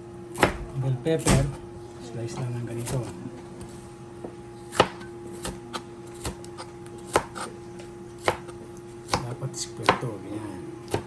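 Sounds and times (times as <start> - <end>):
knife chopping on cutting board: 0.3 - 1.6, 2.8 - 7.6, 8.2 - 10.1.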